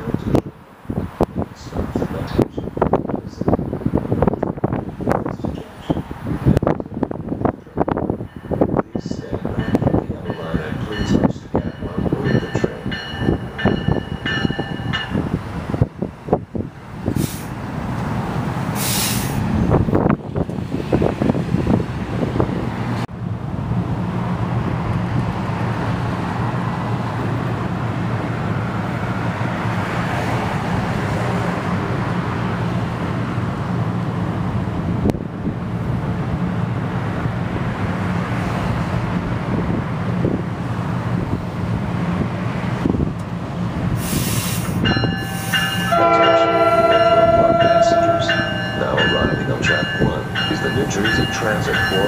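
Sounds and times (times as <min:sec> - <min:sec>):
train hum and rumble: 0:00.0 - 0:52.0
short hiss: 0:18.8 - 0:19.4, 0:44.0 - 0:44.8
train horn chord: 0:45.4 - 0:49.4.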